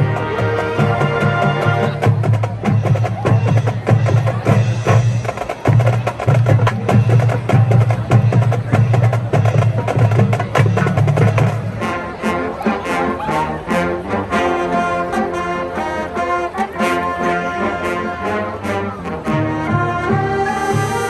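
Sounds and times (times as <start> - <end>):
rapid percussion: 0.0 - 11.9.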